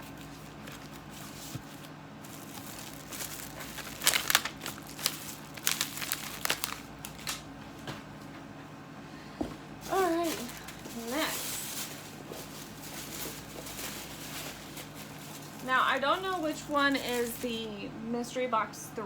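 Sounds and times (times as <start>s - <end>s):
packaging crinkling: 0.0s - 7.6s, 9.8s - 17.7s.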